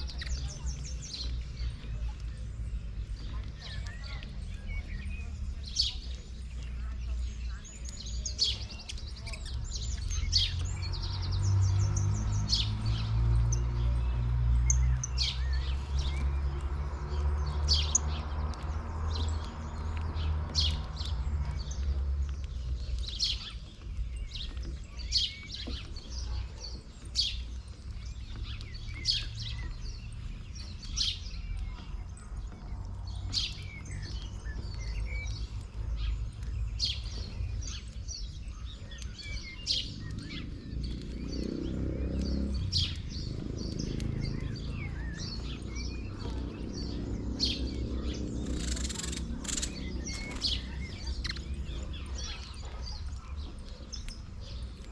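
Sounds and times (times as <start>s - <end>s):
small birds chirping: 0.0s - 54.9s.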